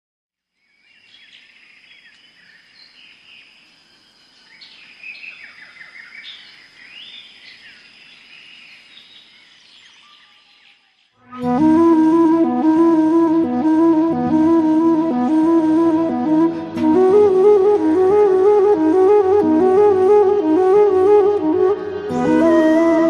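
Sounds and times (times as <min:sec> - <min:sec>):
small birds chirping and singing: 0:00.6 - 0:11.2
steady high-pitched tone: 0:11.4 - 0:23.0.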